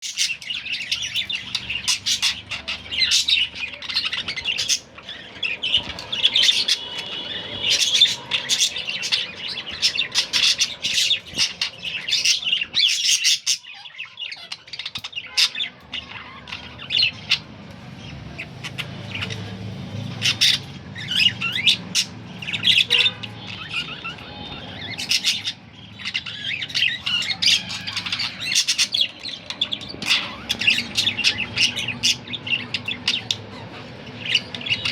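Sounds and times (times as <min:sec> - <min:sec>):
budgerigars chirping: 0:00.0 - 0:34.9
budgerigar squawks: 0:20.2 - 0:34.9.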